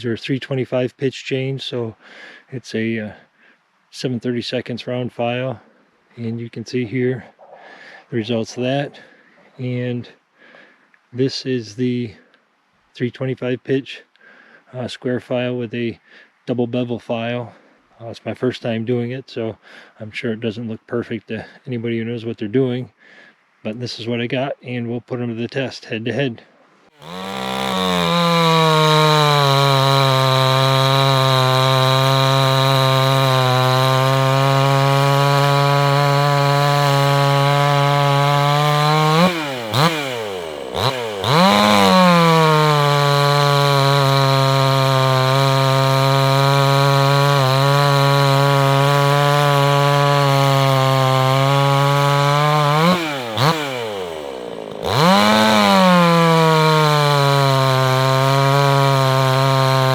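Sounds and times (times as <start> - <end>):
chainsaw cutting wood: 27.0 - 59.9.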